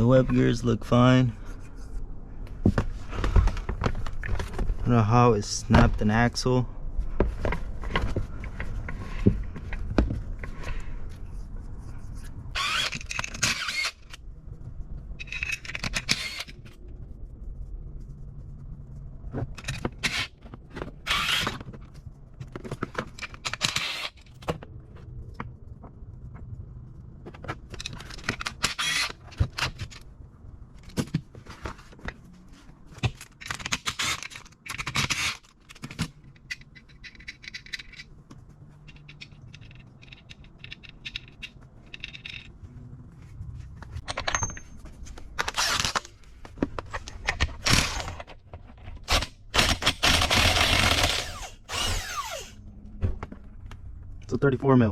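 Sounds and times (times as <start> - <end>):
low steady hum: 0.0 - 34.7, 35.5 - 54.9
metal tools scraping and clinking: 36.2 - 38.1, 38.8 - 42.6, 44.1 - 45.0.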